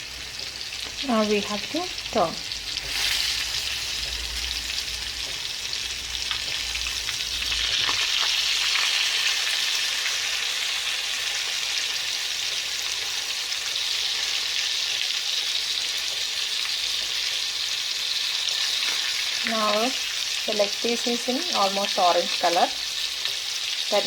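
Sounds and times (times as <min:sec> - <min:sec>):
crab sizzling in hot oil: 0:00.0 - 0:24.0.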